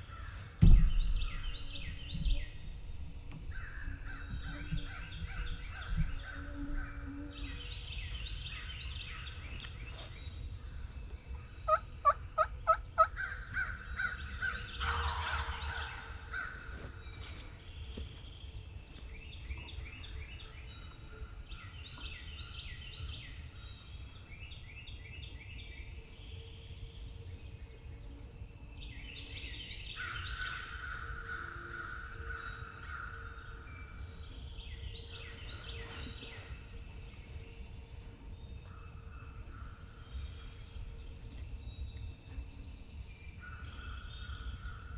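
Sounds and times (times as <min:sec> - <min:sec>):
songbirds chirping faintly: 0:00.0 - 0:44.9
turkey gobbling: 0:11.7 - 0:13.1.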